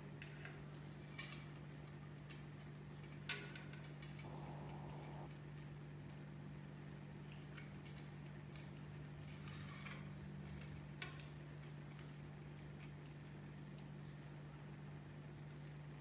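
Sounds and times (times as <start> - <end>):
steady low hum: 4.2 - 5.3.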